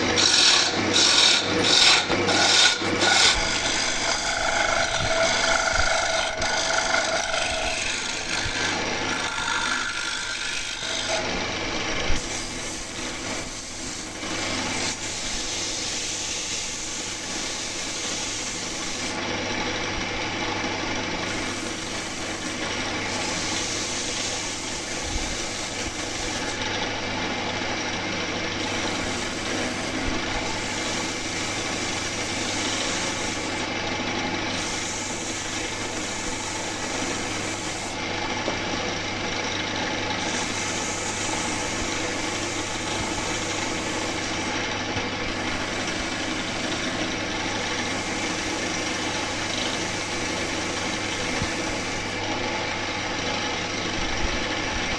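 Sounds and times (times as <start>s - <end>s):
tool rasping against wood: 0.0s - 11.3s
power tool motor hum: 40.1s - 52.2s.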